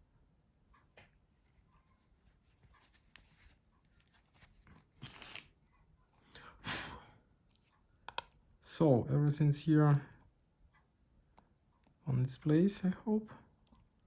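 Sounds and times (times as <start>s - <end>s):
faint clicks and taps: 0.6s - 4.9s, 7.4s - 8.6s, 9.2s - 12.0s, 13.5s - 14.0s.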